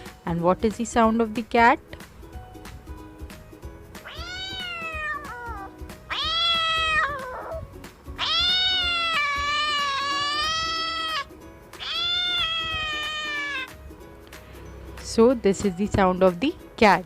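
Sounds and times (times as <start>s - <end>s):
cat meowing: 4.0s - 13.8s.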